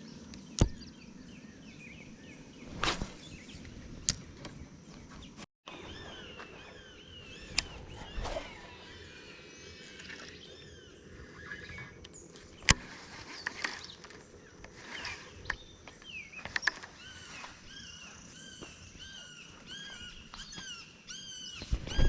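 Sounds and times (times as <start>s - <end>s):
bird chirps: 4.8s - 22.0s.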